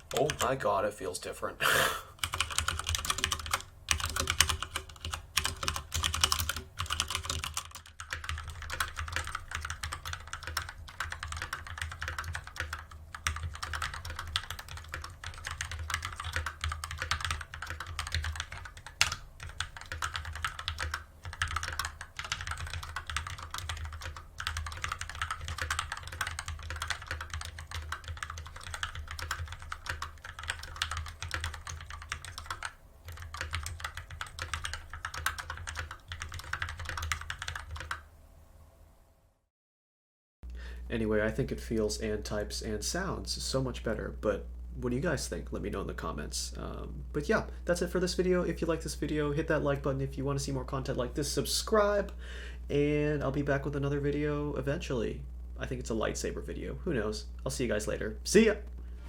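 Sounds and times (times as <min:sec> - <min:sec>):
fast typing on mechanical keyboard: 0:00.0 - 0:00.6, 0:02.2 - 0:38.0.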